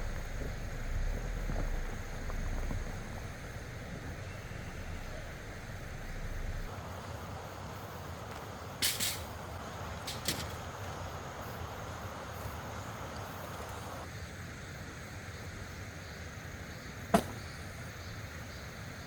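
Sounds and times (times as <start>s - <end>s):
wind rumble on microphone: 0.0s - 6.8s
high hiss: 0.0s - 19.0s.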